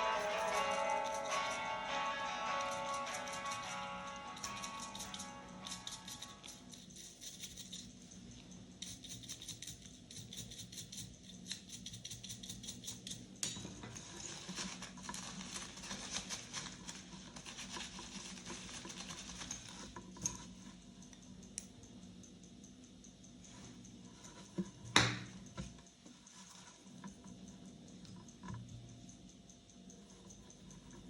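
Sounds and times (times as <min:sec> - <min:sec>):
scrubbing small metal parts: 0:02.4 - 0:13.4.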